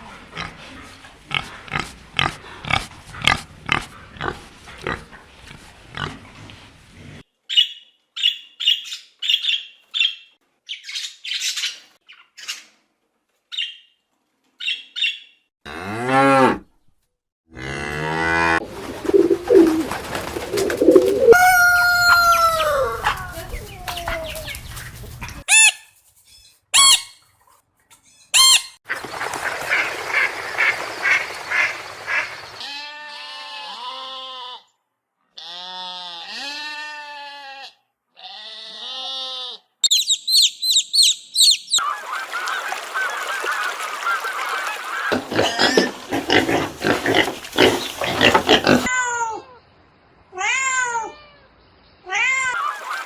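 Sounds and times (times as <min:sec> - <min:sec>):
geese and ducks calling: 0:18.6 - 0:21.4.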